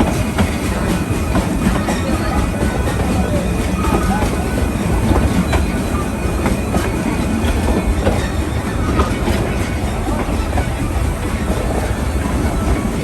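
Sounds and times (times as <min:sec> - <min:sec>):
train wheels rumbling on track: 0:00.0 - 0:13.0.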